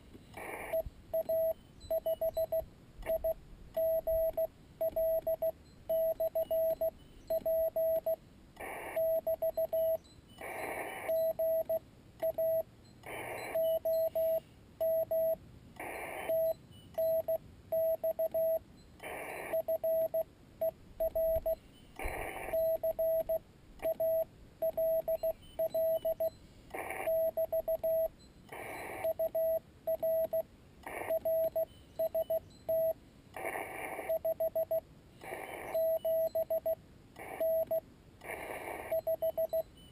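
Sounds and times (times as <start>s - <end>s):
bursts of radio hiss: 0.0s - 1.6s, 6.0s - 16.6s, 17.8s - 20.2s, 21.1s - 32.4s, 33.4s - 36.6s, 37.2s - 39.8s
morse code tone: 0.5s - 33.0s, 34.0s - 37.8s, 38.8s - 39.9s.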